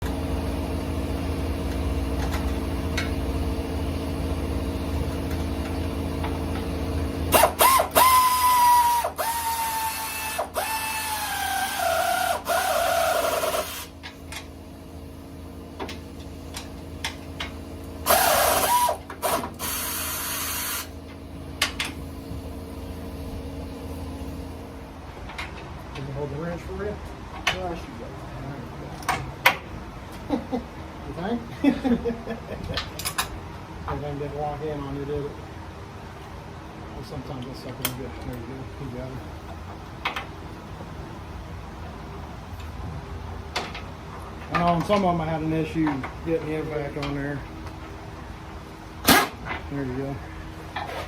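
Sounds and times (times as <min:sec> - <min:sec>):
electric drill whining: 0:07.4 - 0:13.9, 0:18.1 - 0:20.9.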